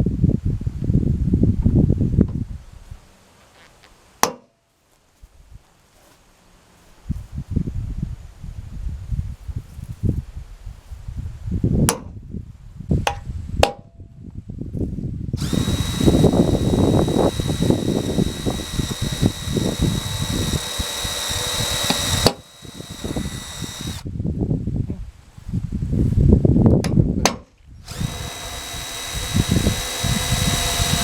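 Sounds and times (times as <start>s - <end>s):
power drill whining: 15.4s - 24.0s, 27.8s - 31.0s
sharp clicks: 15.4s - 24.0s, 27.9s - 31.0s.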